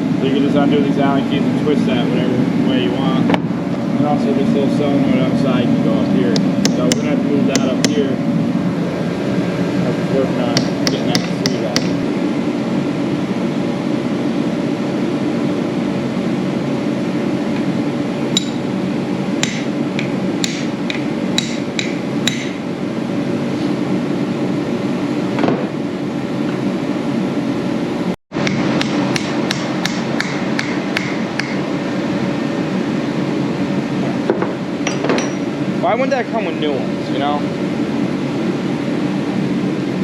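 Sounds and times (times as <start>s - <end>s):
steady low drone: 0.0s - 40.0s
hammer striking metal: 6.6s - 8.0s, 10.5s - 12.0s, 18.4s - 18.6s, 19.4s - 22.6s, 28.4s - 31.6s, 34.8s - 35.5s.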